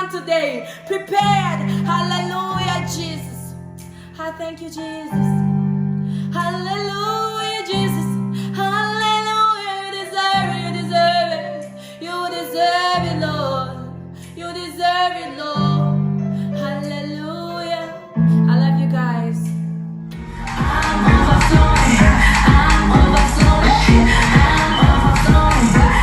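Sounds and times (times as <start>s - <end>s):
sustained low accompaniment: 20.0s - 26.0s
person singing: 20.2s - 26.0s.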